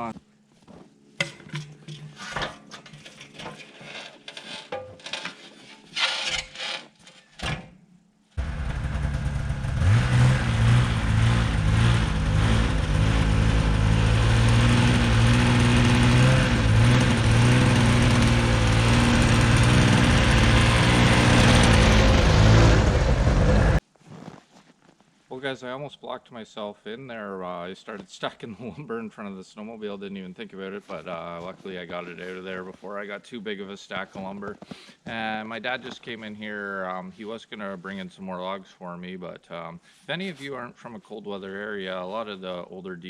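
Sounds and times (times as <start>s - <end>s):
sawmill gasoline engine running: 8.4s - 23.8s.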